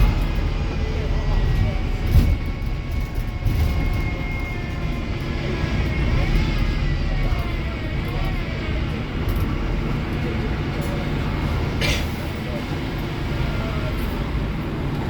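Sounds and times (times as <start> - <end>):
faint whining tones: 0.0 - 11.8
bus diesel engine rumbling: 0.0 - 15.0.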